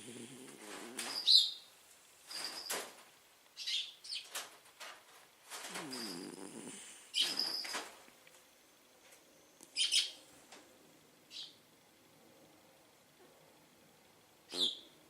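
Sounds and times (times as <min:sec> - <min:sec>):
pet snoring: 0:00.0 - 0:01.2, 0:05.6 - 0:07.6
high squeaky whistles and snuffles: 0:05.7 - 0:07.8.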